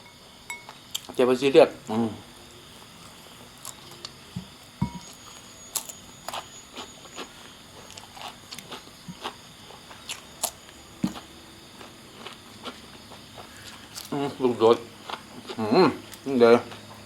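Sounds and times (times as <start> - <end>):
person chewing: 3.5 - 14.2, 15.0 - 16.9.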